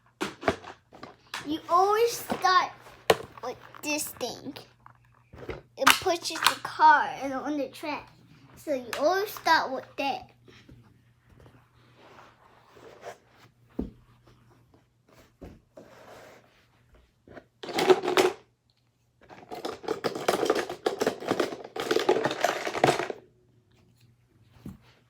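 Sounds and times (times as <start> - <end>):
plastic track pieces clicking: 5.9 - 6.7
plastic track pieces clattering: 17.6 - 18.4, 19.3 - 23.2.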